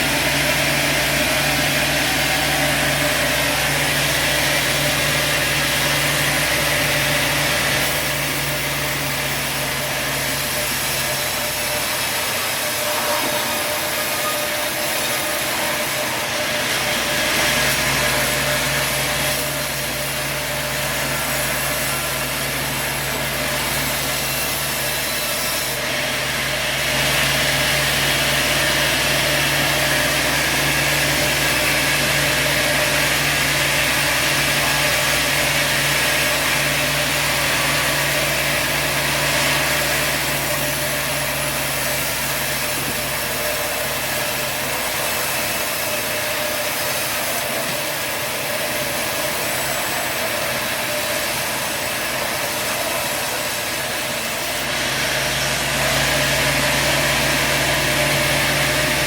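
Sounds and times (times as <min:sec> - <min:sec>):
sawmill engine hum: 0:00.0 - 0:59.0.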